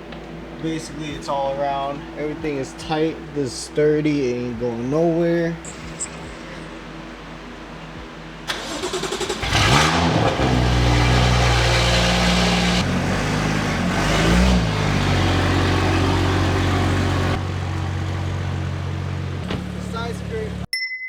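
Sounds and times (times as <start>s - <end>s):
car engine starting and idling: 0.0s - 20.7s
engine rev blip: 8.5s - 17.6s.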